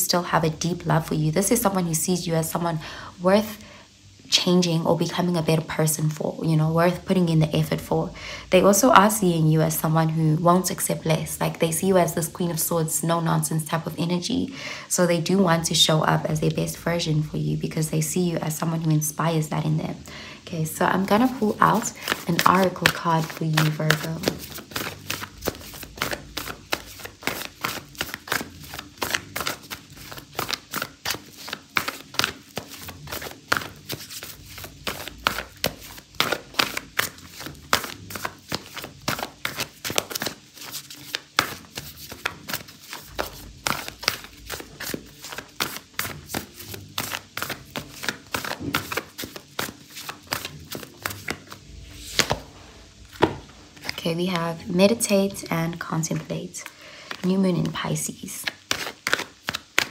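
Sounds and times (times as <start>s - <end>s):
cards being shuffled: 21.0s - 55.0s, 57.0s - 59.9s.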